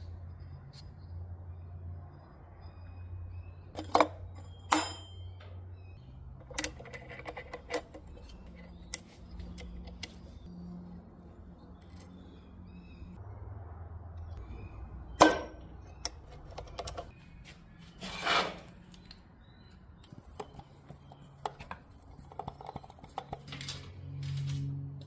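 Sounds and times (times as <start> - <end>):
metal tools clinking: 3.8 - 5.6.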